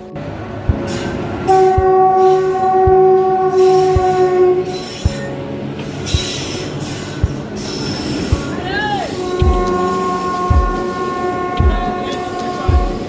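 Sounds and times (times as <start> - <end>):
train rumbling past: 0.3 - 5.0
train wheels thudding: 0.8 - 5.2, 9.3 - 13.0
train horn blast: 1.5 - 4.9, 9.1 - 12.7.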